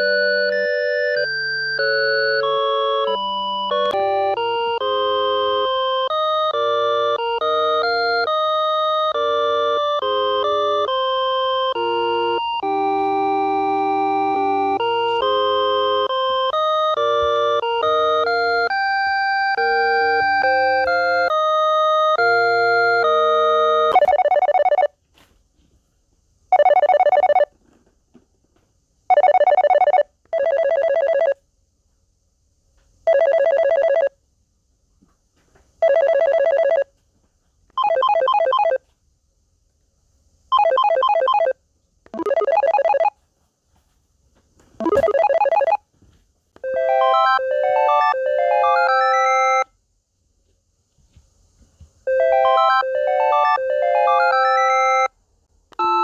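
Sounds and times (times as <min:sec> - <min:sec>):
electronic telephone rings: 0:00.0 - 0:08.3, 0:22.1 - 0:24.9, 0:26.5 - 0:27.5, 0:29.1 - 0:31.4, 0:33.1 - 0:34.2, 0:35.8 - 0:36.9, 0:37.8 - 0:38.8, 0:40.5 - 0:43.2, 0:44.8 - 0:45.8, 0:46.6 - 0:49.7, 0:52.1 - 0:55.1, 0:55.8 - 0:56.0
melodic ringtone tune: 0:00.0 - 0:24.9, 0:26.6 - 0:27.5, 0:29.1 - 0:31.4, 0:35.8 - 0:36.9, 0:37.8 - 0:38.8, 0:40.6 - 0:43.1, 0:44.8 - 0:45.8, 0:46.6 - 0:49.7, 0:52.1 - 0:55.1, 0:55.8 - 0:56.0.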